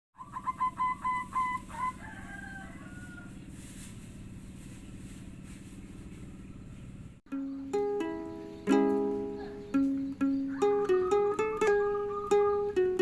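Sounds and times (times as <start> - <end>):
dove cooing: 0.2 - 2.3, 8.6 - 13.0.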